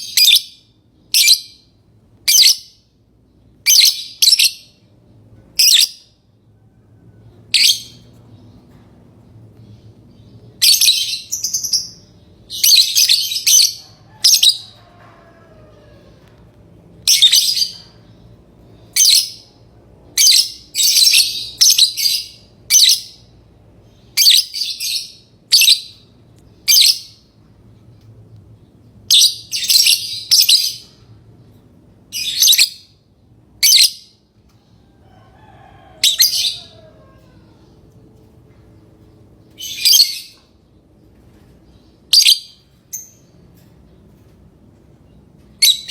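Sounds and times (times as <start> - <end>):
lovebirds chirping: 39.0 - 44.4, 45.0 - 45.9.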